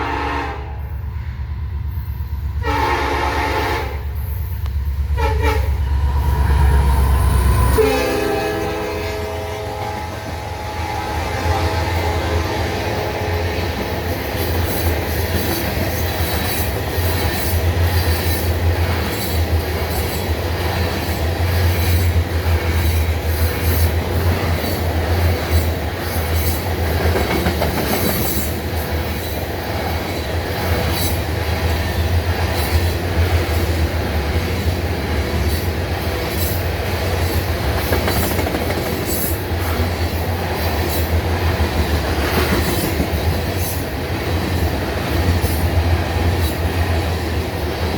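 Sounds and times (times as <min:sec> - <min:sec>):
freight train rumbling past: 0:00.0 - 0:47.9
wheels clicking over rail joints: 0:13.8 - 0:46.7.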